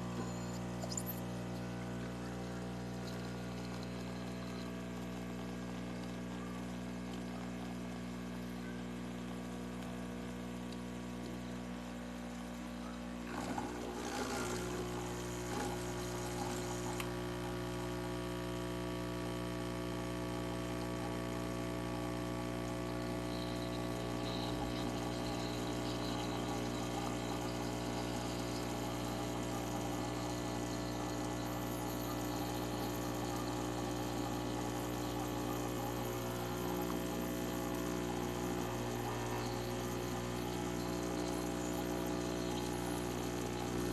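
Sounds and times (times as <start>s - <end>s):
coffee machine pump hum: 0.0s - 43.9s.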